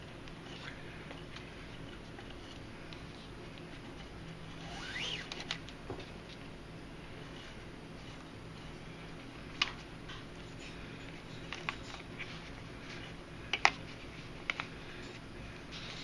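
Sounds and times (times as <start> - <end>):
low steady hum: 0.0 - 16.0
cord rubbing: 3.2 - 5.6.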